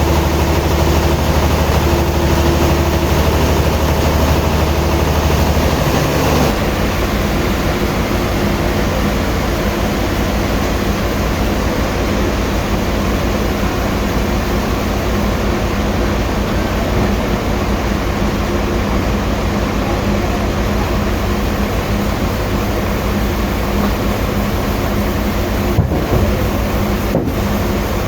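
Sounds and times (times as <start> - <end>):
sawmill machinery running: 0.0 - 28.0
motor hum: 21.8 - 28.0.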